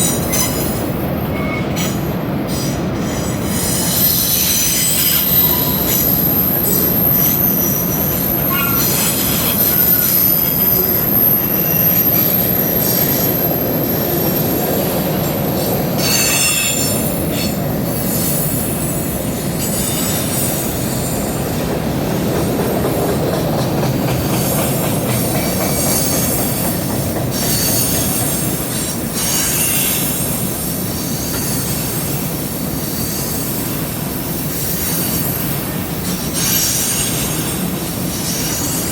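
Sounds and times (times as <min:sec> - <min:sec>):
wheels squealing: 0:00.0 - 0:18.7
railroad cars rumbling on bridge: 0:00.0 - 0:38.9.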